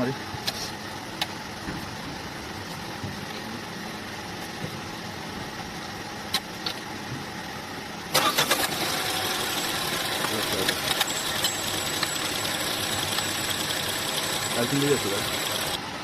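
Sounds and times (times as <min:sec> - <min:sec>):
car engine starting: 0:00.4 - 0:16.0
starter motor cranking: 0:08.1 - 0:15.8.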